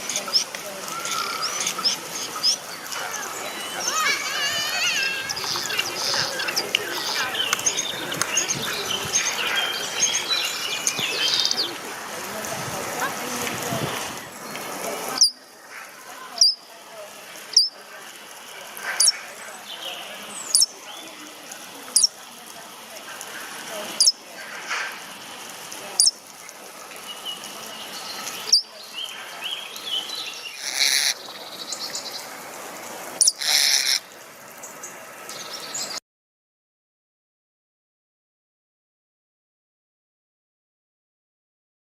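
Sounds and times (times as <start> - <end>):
starling singing: 0.0 - 17.9, 18.7 - 22.3, 23.0 - 24.3, 25.9 - 32.3, 33.2 - 34.1
faint high bird chirps: 27.2 - 32.2.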